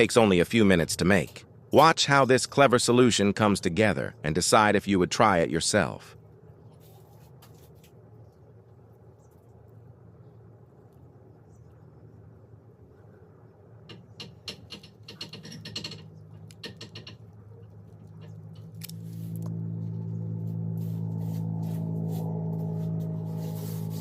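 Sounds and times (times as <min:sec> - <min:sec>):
small clicks and scratches: 0:06.6 - 0:09.8, 0:13.9 - 0:19.6
low gong-like drone: 0:18.0 - 0:24.0.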